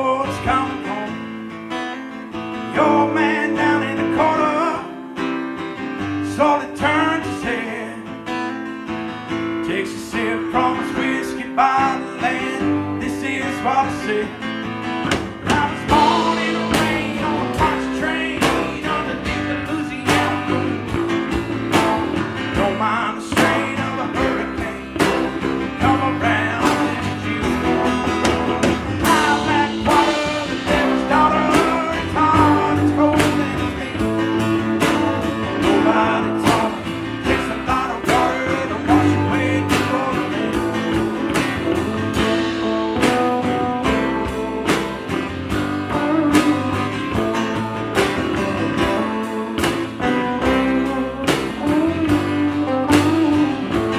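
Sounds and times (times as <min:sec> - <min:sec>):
band playing with guitars: 0:00.0 - 0:53.9
person singing: 0:02.7 - 0:05.3, 0:15.1 - 0:53.9.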